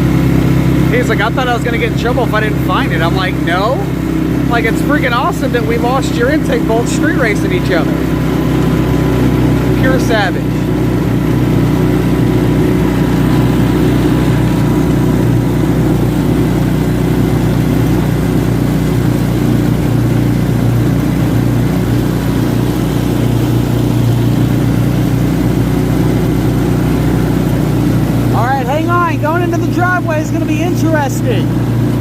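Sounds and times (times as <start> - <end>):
atv engine running: 0.0 - 32.0.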